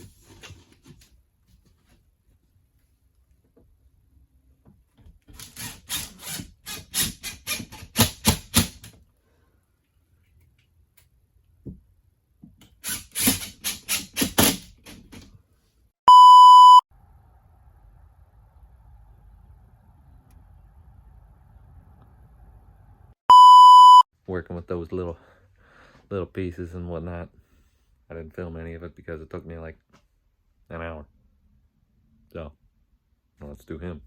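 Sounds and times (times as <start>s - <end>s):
loud electronic beep: 16.1s - 16.8s, 23.3s - 24.0s.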